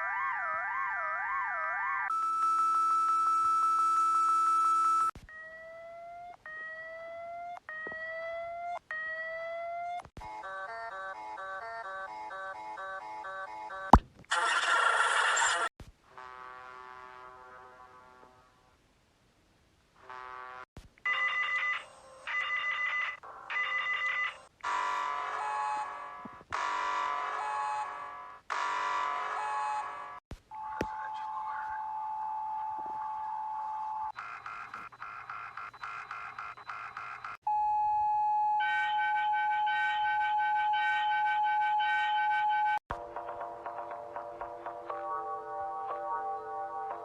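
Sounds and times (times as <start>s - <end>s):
harsh beeping bursts: 34.1s - 37.4s.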